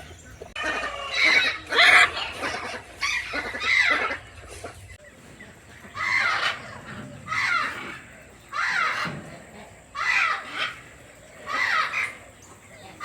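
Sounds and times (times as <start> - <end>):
poultry squawking: 0.0 - 13.0.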